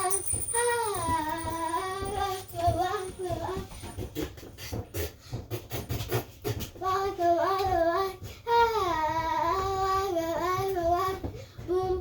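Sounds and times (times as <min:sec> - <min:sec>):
rapid clicks and rustling: 0:00.0 - 0:04.6.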